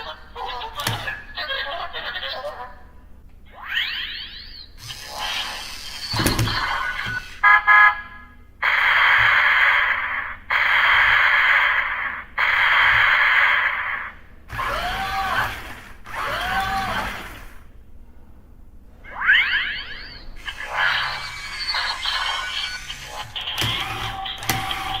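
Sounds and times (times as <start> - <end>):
toy warbling tones: 3.5 - 7.6, 19.0 - 25.0
toy buzzing beep: 3.8 - 7.9, 19.1 - 25.0.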